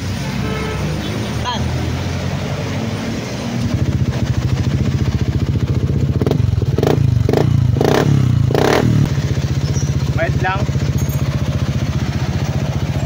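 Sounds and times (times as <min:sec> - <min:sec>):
motorcycle engine idling and revving: 0:00.0 - 0:13.0.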